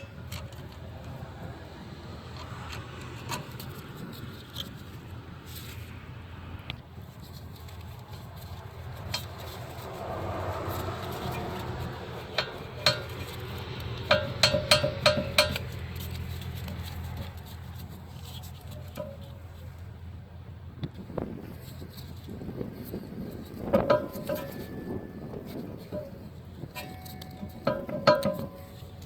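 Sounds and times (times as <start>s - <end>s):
metal tools clinking: 7.2s - 19.8s, 23.3s - 29.0s.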